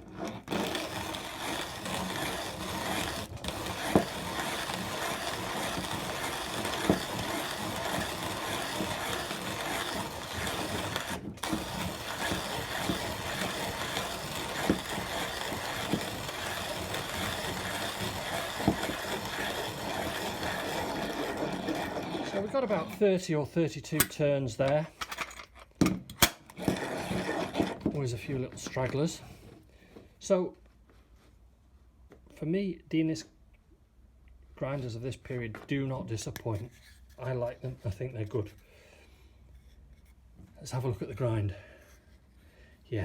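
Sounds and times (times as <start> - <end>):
coffee grinder grinding beans: 0.0 - 23.0, 26.5 - 29.2.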